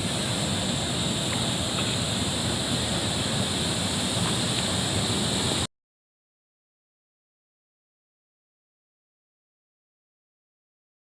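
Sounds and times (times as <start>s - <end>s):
water rushing: 0.0s - 5.7s.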